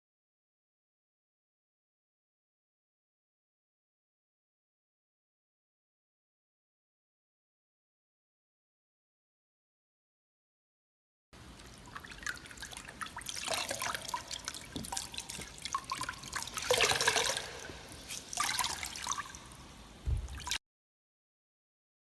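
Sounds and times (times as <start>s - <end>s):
water trickling and dripping: 11.4s - 20.6s
wet cloth squelching: 11.6s - 19.7s
short low thump: 20.0s - 20.4s.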